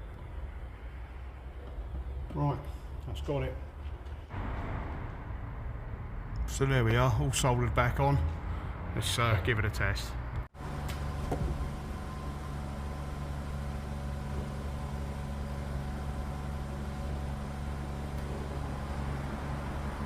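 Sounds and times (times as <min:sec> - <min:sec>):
car engine idling: 0:10.6 - 0:20.0.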